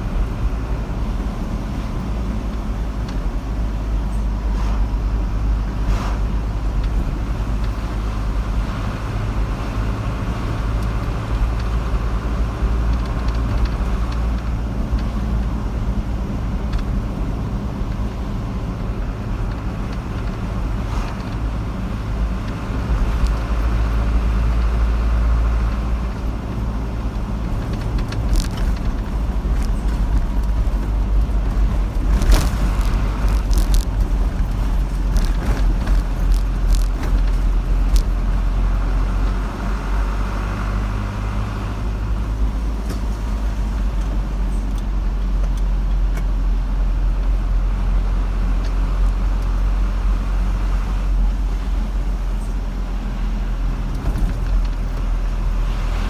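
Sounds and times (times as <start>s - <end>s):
car engine and tyres rumbling: 0.0s - 56.0s
sharp clicks and knocks: 25.6s - 38.4s.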